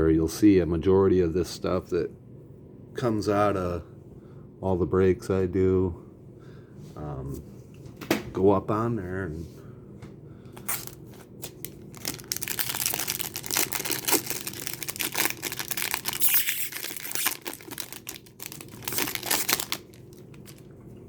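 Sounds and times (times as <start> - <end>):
plastic wrapper tearing and crinkling: 10.6 - 20.7.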